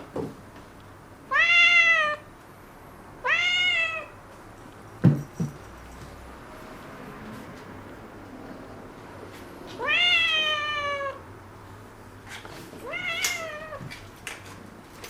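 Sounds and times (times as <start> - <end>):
kitten meowing: 1.3 - 2.2, 3.2 - 4.1, 9.8 - 11.2, 12.8 - 13.9
soft thumps: 5.0 - 6.2.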